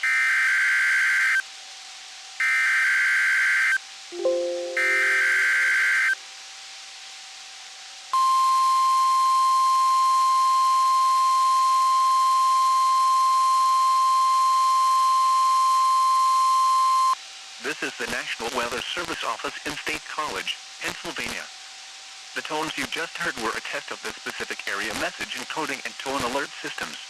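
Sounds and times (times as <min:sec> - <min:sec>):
short lower tone: 0:04.2 - 0:06.2
weather radio alarm tone: 0:04.6 - 0:06.2.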